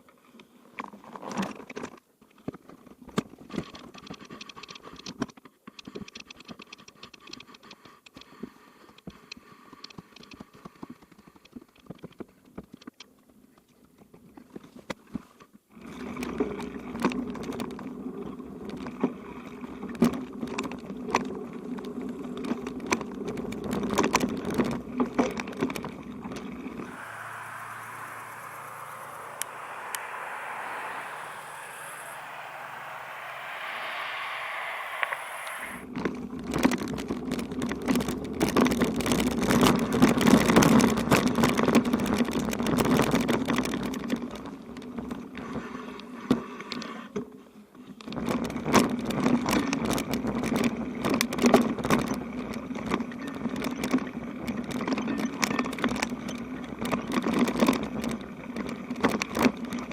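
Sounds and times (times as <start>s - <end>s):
low rumble: 26.8s - 35.8s
steady hiss: 26.8s - 35.8s.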